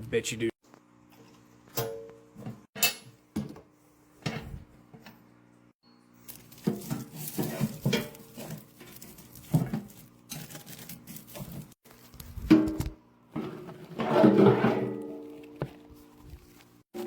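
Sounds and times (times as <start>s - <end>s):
metal parts clunking and rattling: 6.3s - 11.8s.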